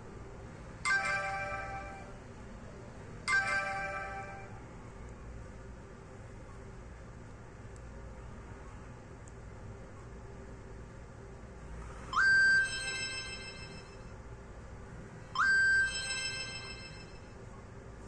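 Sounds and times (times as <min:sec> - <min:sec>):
phone electronic tone: 0:00.9 - 0:02.2, 0:12.2 - 0:14.1, 0:15.4 - 0:17.2.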